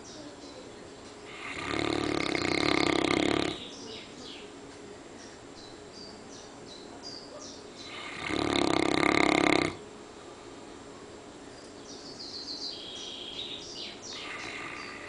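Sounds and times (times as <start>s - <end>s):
dog snoring: 1.3s - 3.7s, 7.8s - 9.8s, 14.1s - 15.0s.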